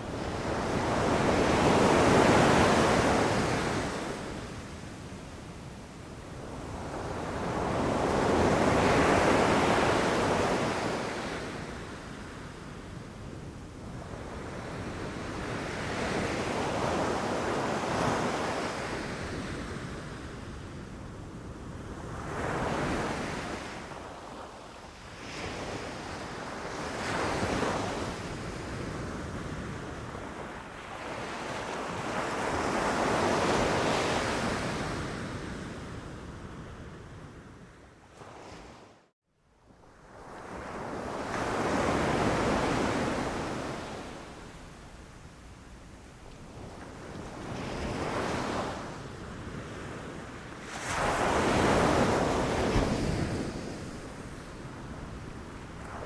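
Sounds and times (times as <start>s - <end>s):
ocean waves breaking on beach: 46.5s - 56.0s.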